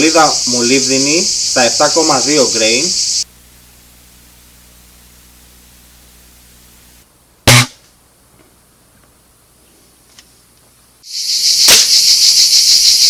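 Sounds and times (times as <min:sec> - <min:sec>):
faint steady hum: 0:02.5 - 0:11.0
air rifle shot: 0:07.5 - 0:07.8, 0:11.7 - 0:12.0.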